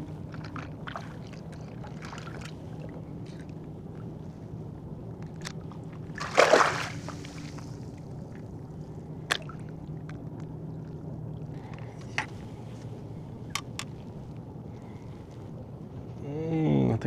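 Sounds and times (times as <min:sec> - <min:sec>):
water sloshing: 0:00.0 - 0:16.1
steady low hum: 0:00.0 - 0:17.0
loud water splash: 0:06.2 - 0:07.5.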